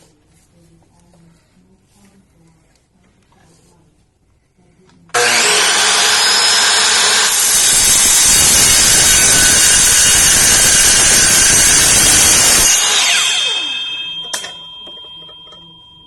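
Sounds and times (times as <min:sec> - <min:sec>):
miter saw cutting steel bar: 0:05.1 - 0:14.8.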